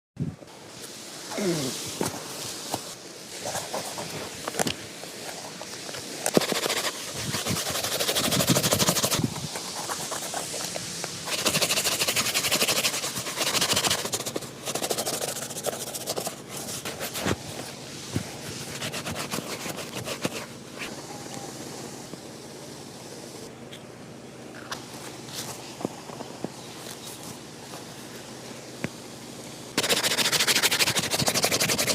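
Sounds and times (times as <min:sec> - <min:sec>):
shoe polishing rubbing strokes: 0:01.3 - 0:04.6, 0:05.2 - 0:22.1, 0:29.8 - 0:31.9
taps and scrapes: 0:02.0 - 0:21.0.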